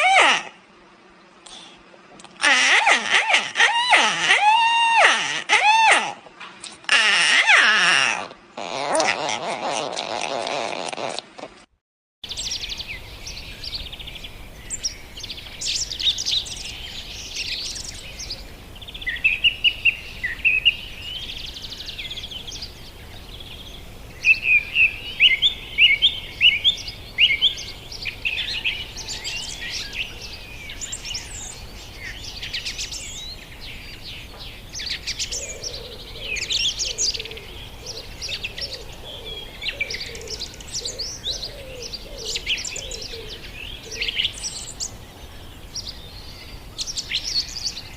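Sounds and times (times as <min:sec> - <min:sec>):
parrots chirping and calling: 0:00.0 - 0:00.6, 0:02.3 - 0:11.3.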